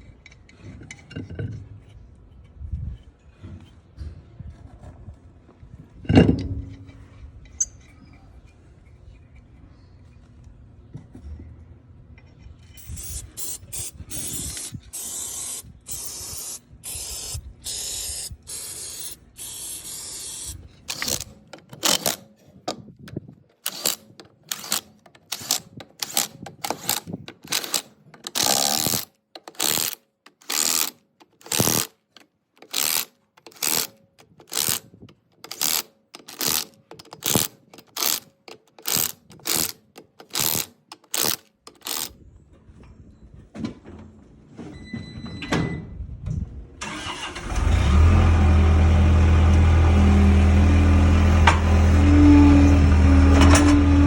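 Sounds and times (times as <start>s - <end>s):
ratchet wrench clicking: 12.7s - 22.2s, 23.6s - 32.0s, 32.6s - 42.1s.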